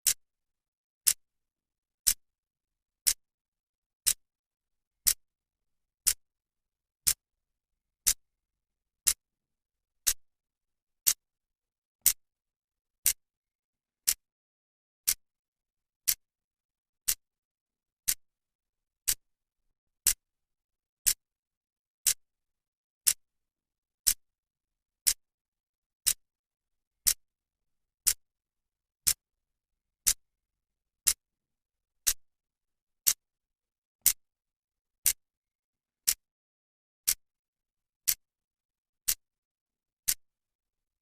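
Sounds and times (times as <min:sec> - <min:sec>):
clock ticking: 0:14.0 - 0:14.2.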